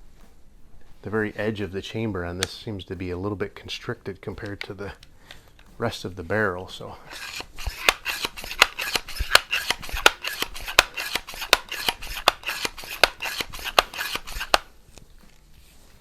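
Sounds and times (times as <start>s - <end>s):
air rifle pump clicking: 4.4s - 5.8s, 7.1s - 14.7s
rasping pump friction: 6.8s - 14.7s.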